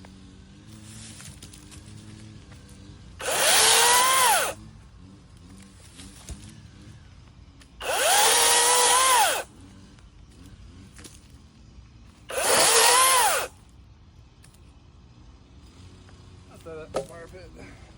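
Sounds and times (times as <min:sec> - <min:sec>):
electric chainsaw whine: 0:00.0 - 0:07.1, 0:07.7 - 0:11.1, 0:12.3 - 0:13.6.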